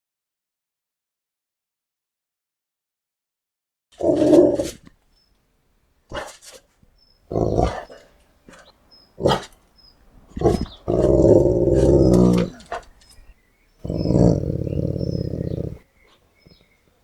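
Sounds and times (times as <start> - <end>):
large dog growling: 4.0 - 4.9, 7.3 - 9.6, 10.2 - 16.8.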